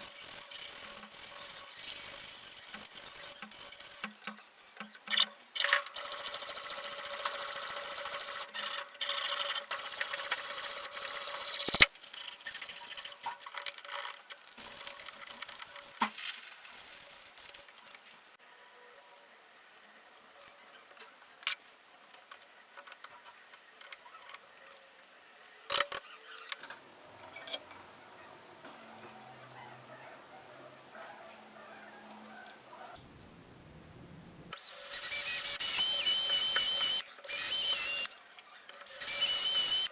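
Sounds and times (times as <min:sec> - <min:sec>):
tool rasping on hard material: 0:00.0 - 0:04.2.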